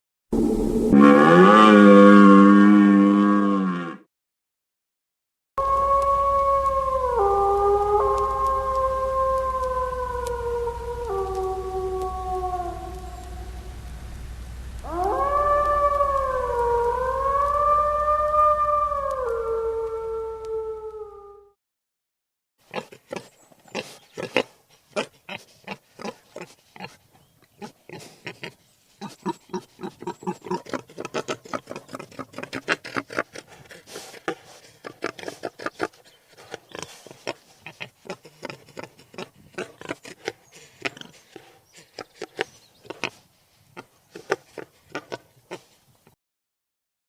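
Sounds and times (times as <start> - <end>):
wild boar grunting: 27.6 - 45.8.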